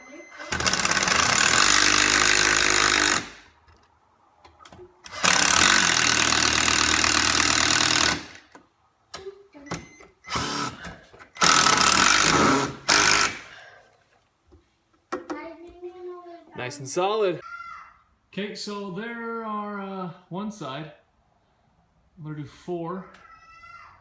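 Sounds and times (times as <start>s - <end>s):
impact driver driving screws: 0.4s - 3.8s, 5.0s - 8.6s, 10.3s - 13.6s.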